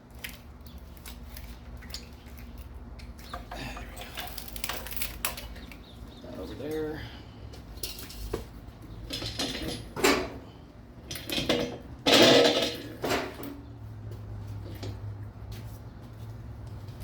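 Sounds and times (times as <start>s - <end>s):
engine parts and tools clinking: 2.0s - 6.9s, 7.5s - 15.2s.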